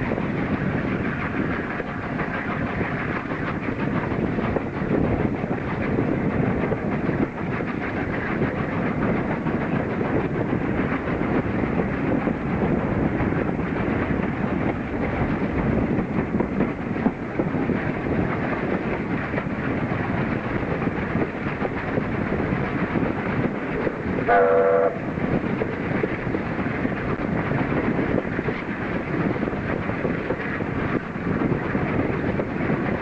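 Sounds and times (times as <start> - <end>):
train wheels rumbling on rails: 0.0 - 33.0
steam whistle blast: 24.3 - 25.0.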